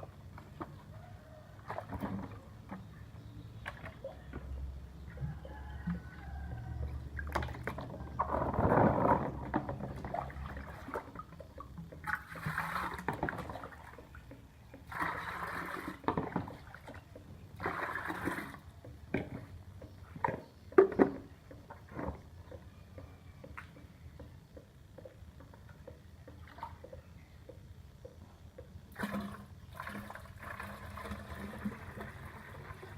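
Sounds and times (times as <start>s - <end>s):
water pouring: 7.2s - 14.2s, 14.8s - 17.0s, 17.6s - 18.7s, 28.9s - 32.9s.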